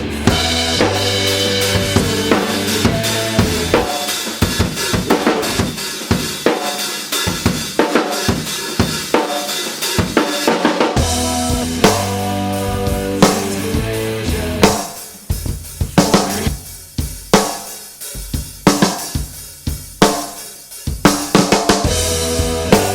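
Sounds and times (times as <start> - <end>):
band playing: 0.0 - 6.0, 10.7 - 14.9, 21.8 - 22.9.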